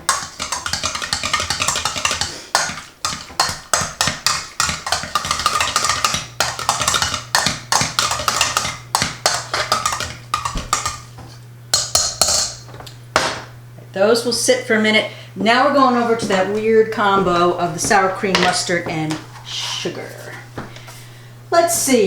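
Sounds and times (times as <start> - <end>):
potato masher knocking pot: 0.0 - 13.5, 15.9 - 19.5.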